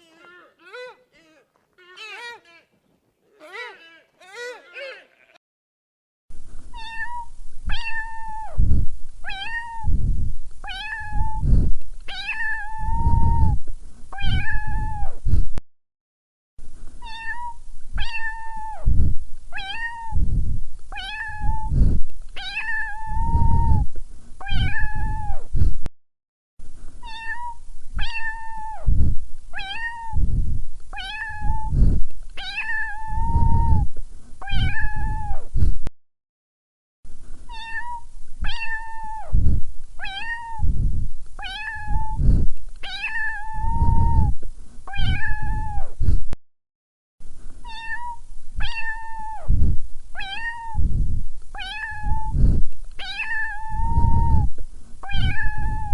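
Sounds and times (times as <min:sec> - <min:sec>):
cat meowing: 0:00.0 - 0:02.7, 0:03.4 - 0:05.4, 0:06.8 - 0:08.6, 0:09.2 - 0:09.9, 0:10.7 - 0:11.4, 0:14.2 - 0:15.1, 0:17.0 - 0:18.8, 0:19.6 - 0:20.2, 0:24.4 - 0:25.4, 0:27.0 - 0:28.8, 0:29.6 - 0:30.2, 0:31.0 - 0:31.8, 0:32.4 - 0:33.8, 0:34.4 - 0:35.4, 0:37.5 - 0:39.3, 0:40.0 - 0:40.6, 0:41.4 - 0:42.2, 0:42.8 - 0:44.3, 0:44.9 - 0:45.9, 0:47.6 - 0:49.5, 0:50.2 - 0:50.8, 0:51.6 - 0:52.4, 0:53.0 - 0:55.9.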